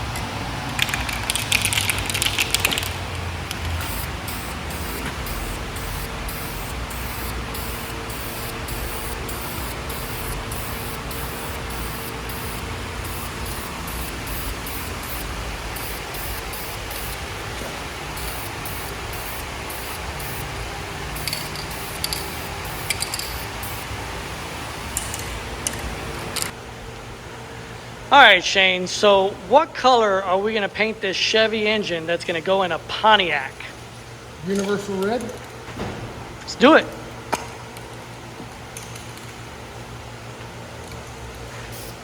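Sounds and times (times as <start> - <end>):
faint steady hum: 0.0 - 42.0
hissing spray: 3.4 - 24.0, 41.7 - 42.0
sharp clicks: 21.2 - 23.4.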